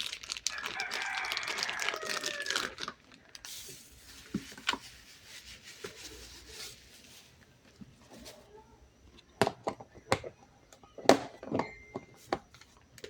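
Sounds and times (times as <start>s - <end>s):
packaging crinkling and tearing: 0.0s - 5.1s
faint rooster crowing: 0.4s - 3.0s.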